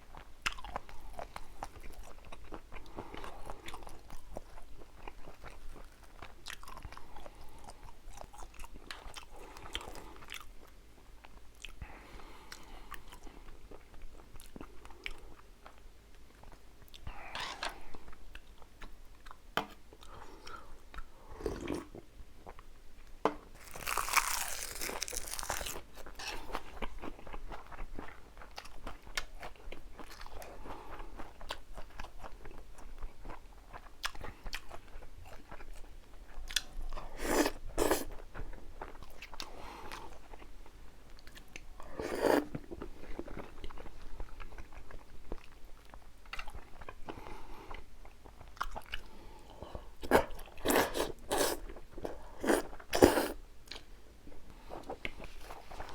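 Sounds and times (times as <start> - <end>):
person chewing food: 0.1 - 22.6, 23.6 - 40.5, 41.1 - 53.9
crunching bites: 23.6 - 25.9.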